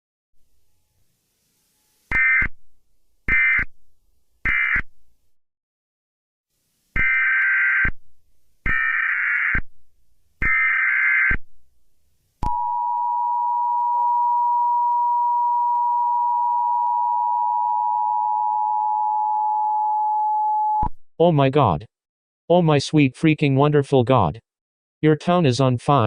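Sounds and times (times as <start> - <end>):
digital data header bursts: 2.1 - 2.5.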